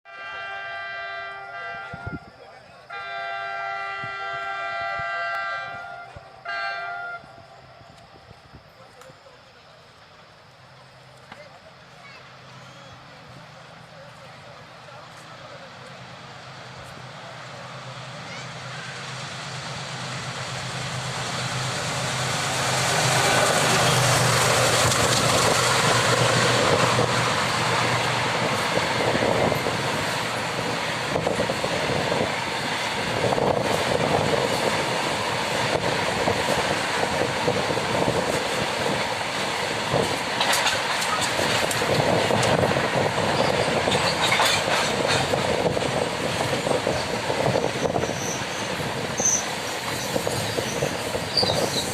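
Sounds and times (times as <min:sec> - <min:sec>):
diesel locomotive at full throttle: 0:00.2 - 0:51.9
freight wagons clickety-clack: 0:39.9 - 0:42.6, 0:43.3 - 0:51.9.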